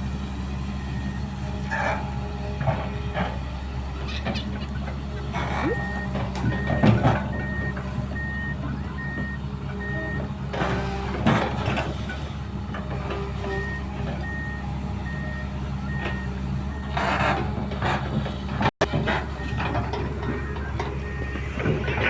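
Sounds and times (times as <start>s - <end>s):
diesel engine running: 0.0s - 22.0s
warning alarm beeping: 5.4s - 10.3s
machine clanks and rattles: 16.9s - 22.0s.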